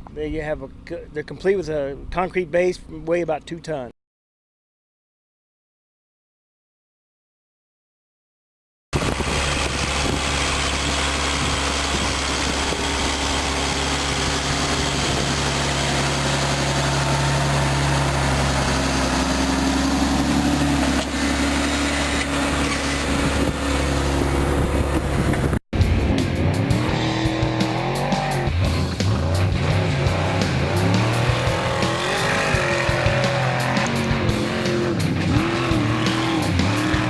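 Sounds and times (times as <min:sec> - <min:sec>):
engine humming: 0:09.0 - 0:37.0.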